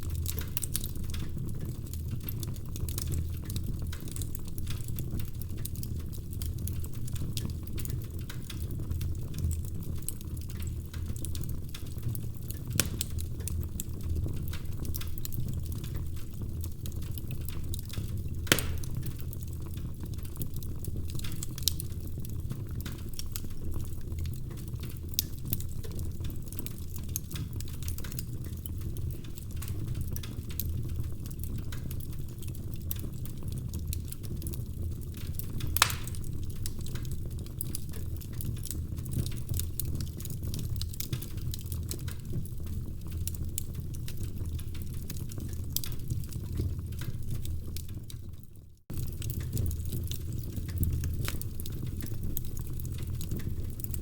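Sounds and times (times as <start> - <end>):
firewood crackling: 0.0 - 54.0
low rumble of fire: 0.0 - 54.0
sharp pops of burning wood: 12.5 - 13.9, 17.3 - 19.4, 35.6 - 37.1.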